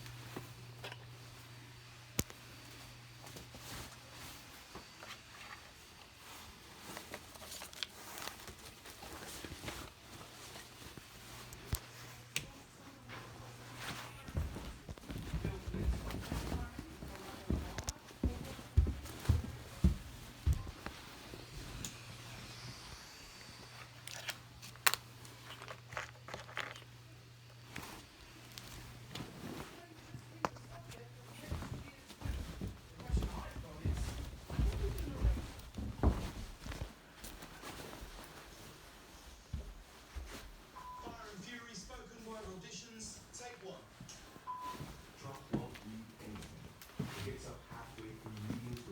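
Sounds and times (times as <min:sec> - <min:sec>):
low electrical hum: 0:00.0 - 0:48.9
faint rustling: 0:00.3 - 0:25.7, 0:26.9 - 0:48.9
handling clicks and crinkles: 0:02.1 - 0:19.3, 0:23.8 - 0:38.9.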